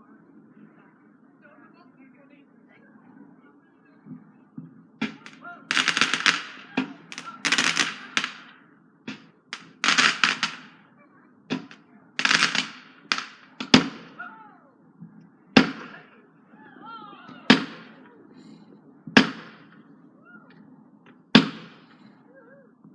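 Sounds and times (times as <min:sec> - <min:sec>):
fireworks bangs and crackling: 0:05.0 - 0:10.8, 0:11.5 - 0:14.2, 0:15.6 - 0:16.0, 0:17.5 - 0:18.0, 0:19.2 - 0:19.8, 0:21.4 - 0:21.9.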